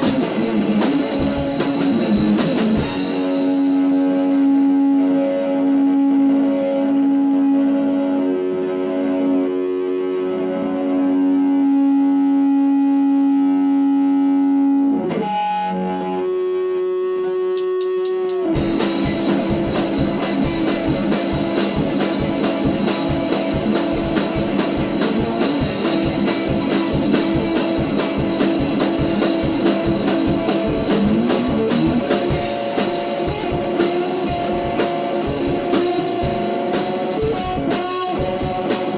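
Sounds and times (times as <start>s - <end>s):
drums fast driving beat: 0.0s - 4.5s, 17.6s - 38.9s
distorted electric guitar chord: 0.0s - 38.9s.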